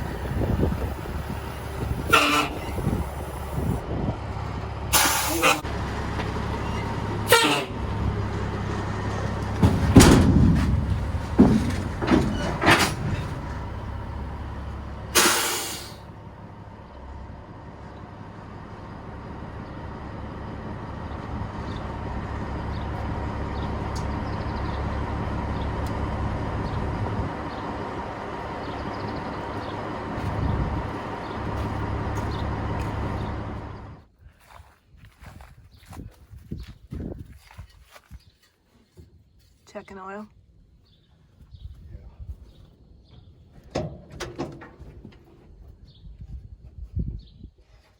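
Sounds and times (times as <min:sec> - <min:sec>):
diesel truck engine idling: 0:00.0 - 0:34.1
air hissing burst: 0:05.0 - 0:05.6, 0:15.2 - 0:16.0
metallic knocks and clanks: 0:06.2 - 0:14.7.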